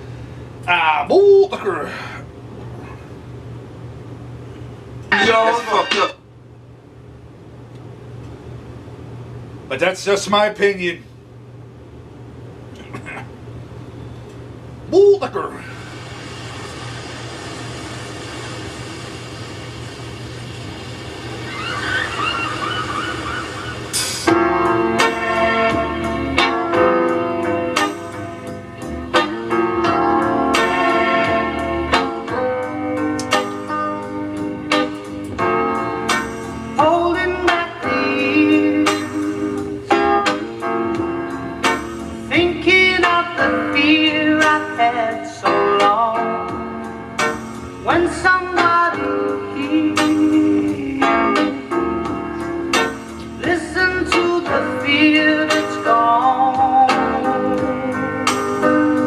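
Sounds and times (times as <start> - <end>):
appliance hum: 0.0 - 59.0
wavering whistle-like high tone: 21.4 - 24.2
song with singing and backing: 36.8 - 40.5, 42.3 - 46.5, 47.8 - 51.9, 52.8 - 59.0.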